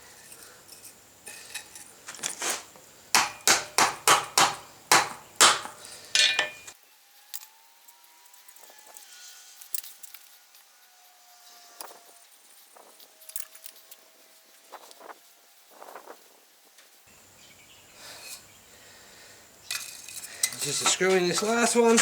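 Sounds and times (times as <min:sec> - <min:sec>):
hammer tapping on steel: 0:03.2 - 0:06.8.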